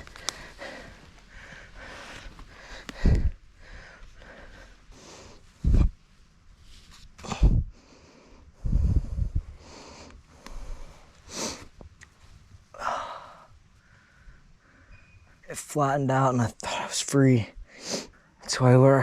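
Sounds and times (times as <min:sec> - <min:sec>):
man sniffing: 0:09.6 - 0:11.7.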